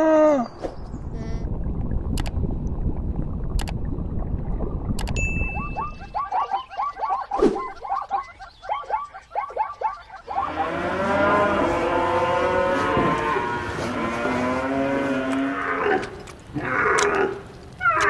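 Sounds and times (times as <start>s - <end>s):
cows mooing: 10.2s - 18.0s.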